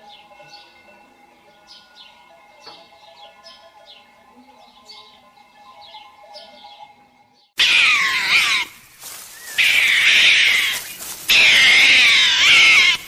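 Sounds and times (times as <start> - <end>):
cat meowing loudly: 7.6 - 8.7, 9.6 - 13.0.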